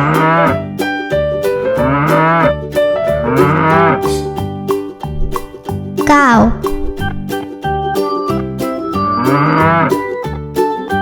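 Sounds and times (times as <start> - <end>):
upbeat children's music: 0.0 - 11.0
cow mooing: 1.8 - 2.5, 3.2 - 4.0.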